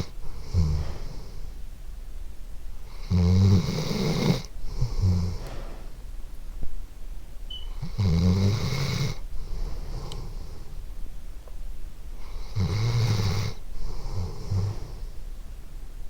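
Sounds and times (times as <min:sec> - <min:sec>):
dog snoring: 0:00.0 - 0:01.5, 0:02.8 - 0:05.8, 0:07.7 - 0:10.8, 0:12.2 - 0:15.2.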